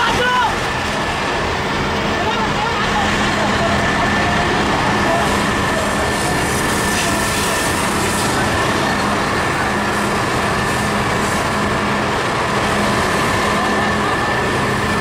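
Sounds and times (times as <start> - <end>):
engine running steadily: 0.0 - 15.0.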